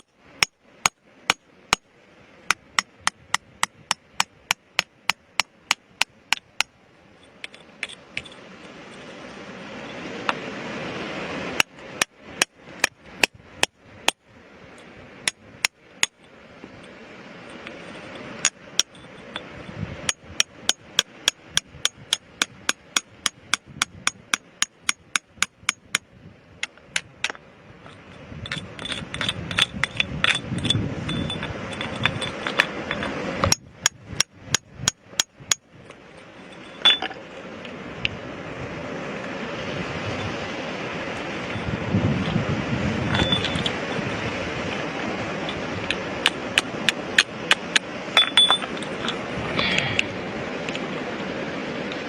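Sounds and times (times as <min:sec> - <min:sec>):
hammer striking rock: 0:00.0 - 0:01.9, 0:02.5 - 0:06.8, 0:11.6 - 0:14.2, 0:15.2 - 0:16.2, 0:18.4 - 0:27.4, 0:28.4 - 0:35.6, 0:45.9 - 0:48.8.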